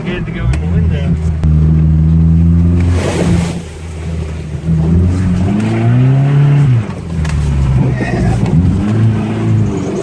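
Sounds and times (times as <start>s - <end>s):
pickup engine revving: 1.2s - 10.0s
water spray rush: 2.8s - 4.4s.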